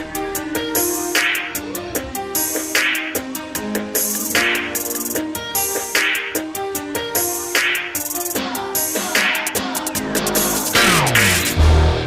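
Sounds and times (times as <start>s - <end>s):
electronic music with plucked notes: 0.0s - 12.0s.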